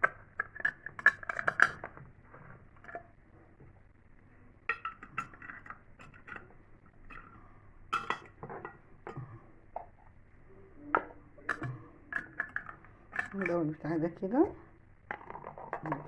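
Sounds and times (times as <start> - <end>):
glass jars clinking: 4.7 - 10.0, 10.9 - 13.9.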